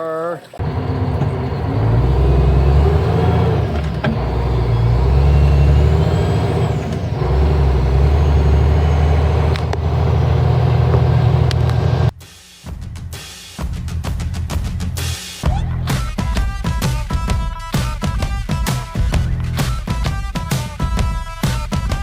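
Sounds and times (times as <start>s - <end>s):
diesel engine running: 0.6s - 12.1s.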